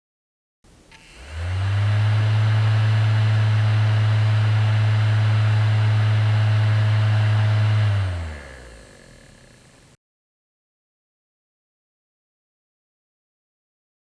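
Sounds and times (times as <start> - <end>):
electric fan motor humming: 0.7 - 10.0.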